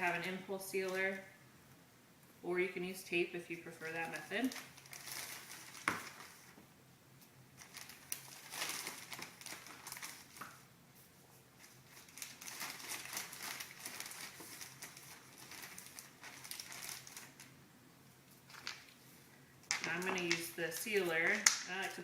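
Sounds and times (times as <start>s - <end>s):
plastic bag crinkling: 3.8s - 6.6s, 7.6s - 10.6s, 11.6s - 17.6s, 18.4s - 19.1s, 19.7s - 22.0s.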